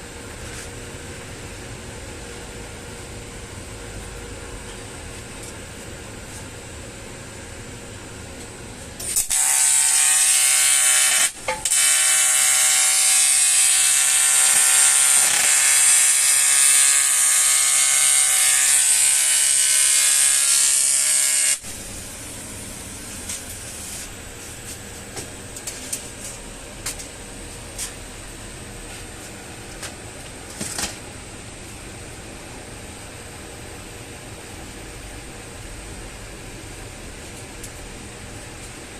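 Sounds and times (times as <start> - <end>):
welding arc buzzing: 9.0 - 27.0.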